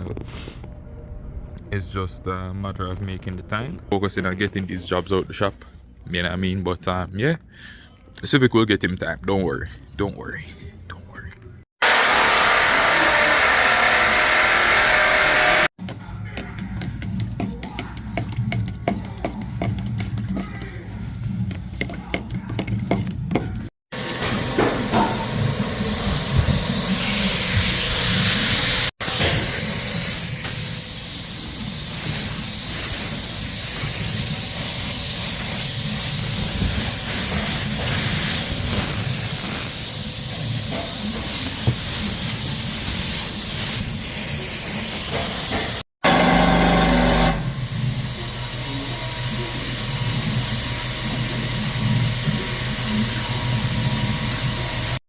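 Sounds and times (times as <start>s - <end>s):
spray gun air hiss: 23.9s - 45.8s, 47.4s - 55.0s.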